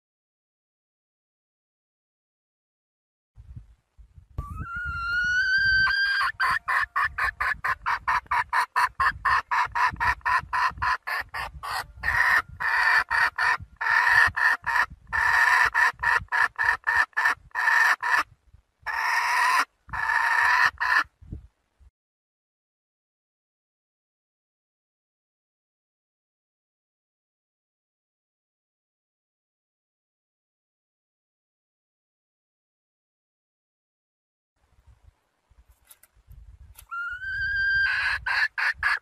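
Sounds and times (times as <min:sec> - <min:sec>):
hen cackling: 0:04.4 - 0:18.3, 0:18.9 - 0:21.1, 0:36.8 - 0:39.0.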